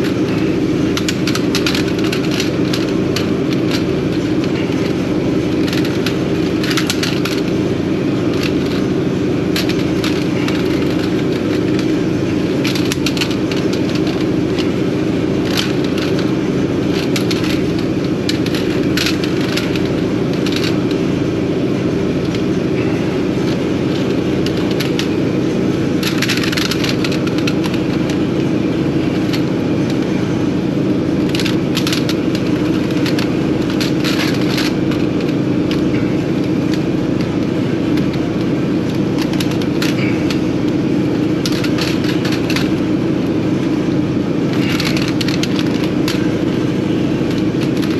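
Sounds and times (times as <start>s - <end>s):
engine droning: 0.0s - 47.9s
short clicks and crackles: 38.8s - 40.5s.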